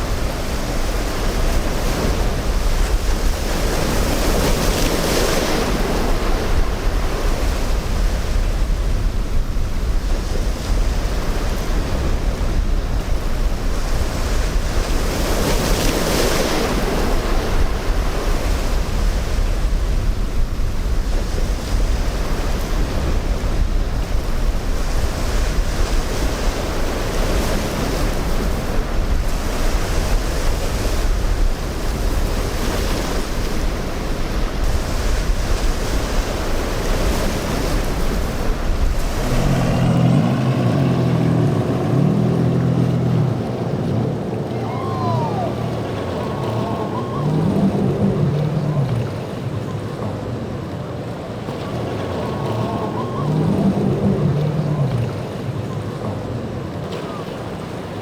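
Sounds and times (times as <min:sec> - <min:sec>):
boat engines droning: 0:00.0 - 0:58.0
surf and breaking waves: 0:00.0 - 0:58.0
wind buffeting microphone: 0:00.0 - 0:58.0.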